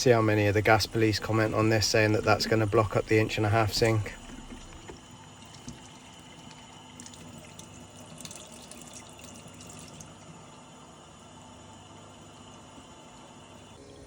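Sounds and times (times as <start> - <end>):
tap water running into sink: 0.8 - 10.6
water splashing: 1.0 - 10.1.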